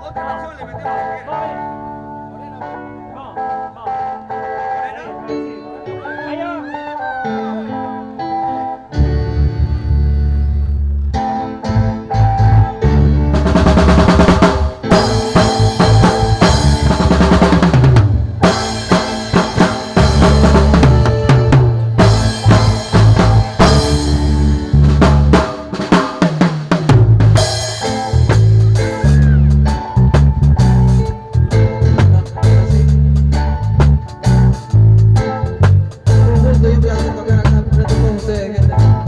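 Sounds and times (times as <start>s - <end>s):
drum kit music: 8.4s - 39.0s
low bass line: 8.9s - 25.8s, 26.9s - 39.0s.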